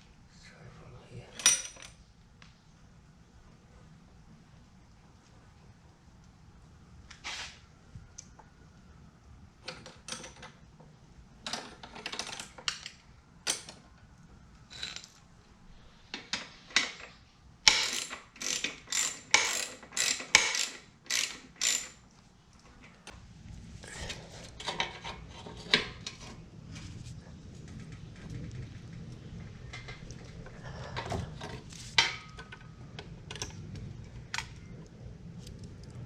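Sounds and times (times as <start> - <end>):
ratchet wrench clicking: 17.7 - 22.0.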